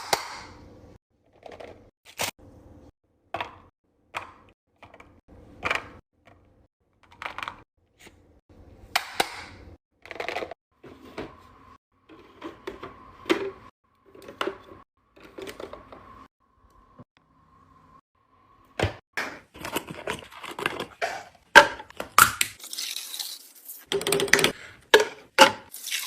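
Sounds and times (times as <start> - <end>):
items knocking and clattering: 10.0 - 11.4, 18.8 - 22.5, 23.9 - 25.7.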